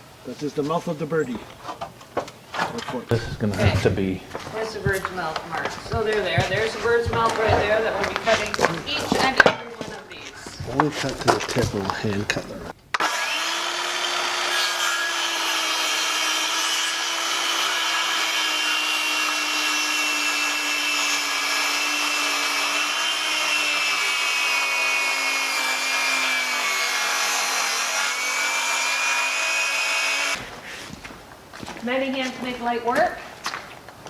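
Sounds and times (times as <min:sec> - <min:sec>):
electric saw cutting wood: 0:12.9 - 0:30.4.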